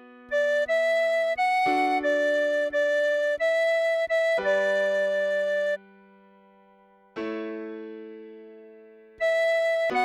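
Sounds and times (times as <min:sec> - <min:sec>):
tin whistle melody: 0:00.3 - 0:05.8, 0:09.2 - 0:10.0.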